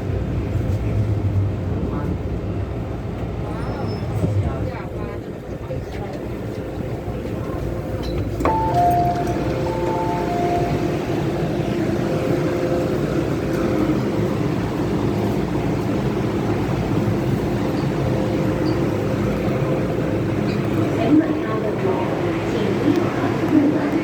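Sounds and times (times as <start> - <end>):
train rumbling: 0.0 - 24.0
faint even tones: 8.5 - 11.3.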